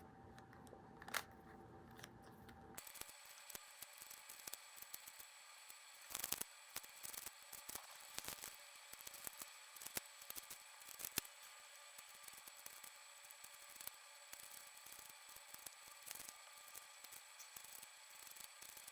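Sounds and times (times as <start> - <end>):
small objects clicking and crackling: 2.8 - 5.2, 6.0 - 11.3, 12.0 - 18.9.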